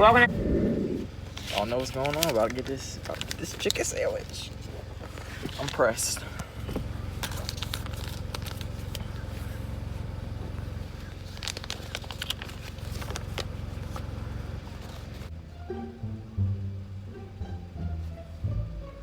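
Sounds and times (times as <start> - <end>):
car cabin rumble: 0.0 - 2.8, 4.0 - 15.3
clicks and crackles: 7.2 - 9.1, 11.2 - 13.6
music: 15.3 - 19.0.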